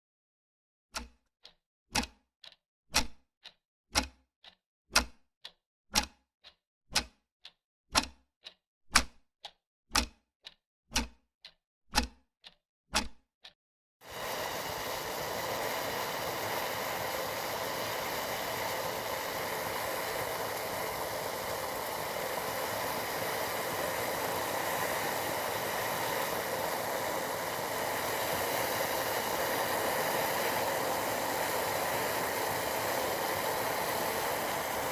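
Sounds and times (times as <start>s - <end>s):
sharp regular clicks: 0.9s - 13.6s
tea boiling in a pan: 14.0s - 34.9s.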